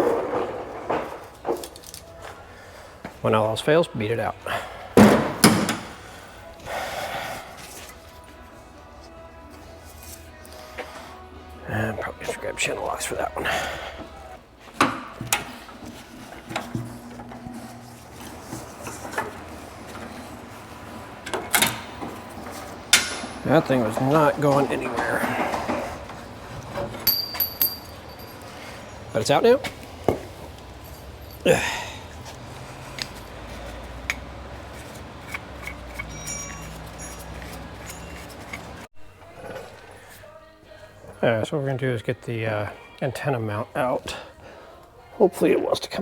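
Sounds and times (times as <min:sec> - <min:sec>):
hand tools clicking and clinking: 0:12.1 - 0:39.7
metal clatter: 0:21.2 - 0:29.1, 0:33.0 - 0:38.9.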